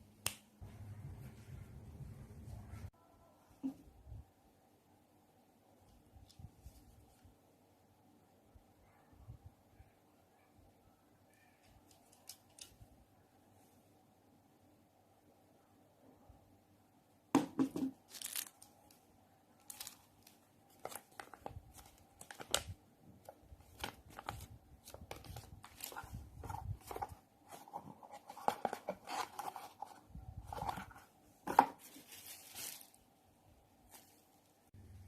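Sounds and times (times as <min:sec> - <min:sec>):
crinkling rustling: 0:17.8 - 0:19.0, 0:19.6 - 0:33.1, 0:33.8 - 0:34.7.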